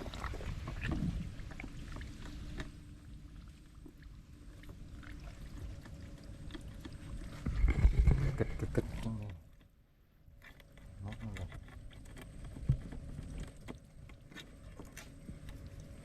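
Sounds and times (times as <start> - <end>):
wind on microphone: 7.4 - 8.8.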